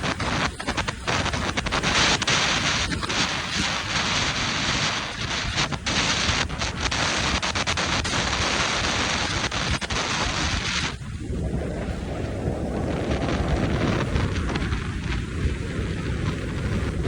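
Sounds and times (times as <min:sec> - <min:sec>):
wind rushing over microphone: 0:00.0 - 0:17.0.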